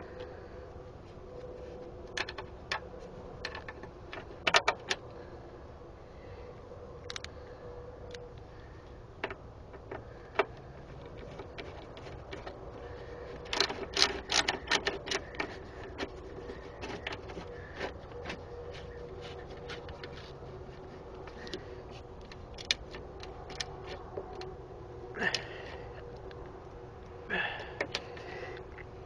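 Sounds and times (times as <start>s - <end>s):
faint steady hum: 0.0s - 29.0s
hand tools clicking and tapping: 9.2s - 24.5s, 27.6s - 28.9s.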